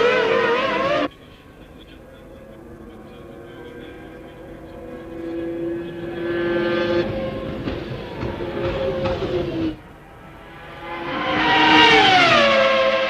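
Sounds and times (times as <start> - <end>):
racing car engines running: 0.0 - 13.0.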